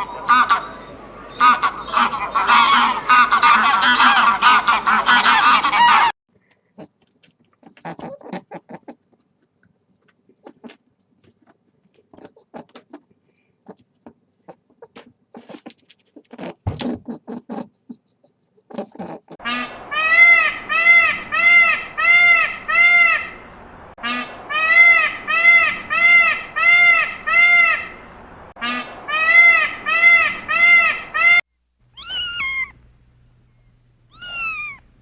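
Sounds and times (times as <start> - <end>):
geese honking: 0.0 - 6.1, 19.4 - 23.4, 24.0 - 28.0, 28.6 - 31.4.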